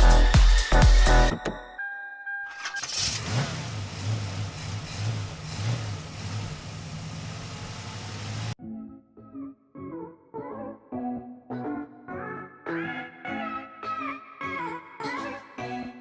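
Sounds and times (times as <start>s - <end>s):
van engine starting and idling: 2.5s - 8.6s.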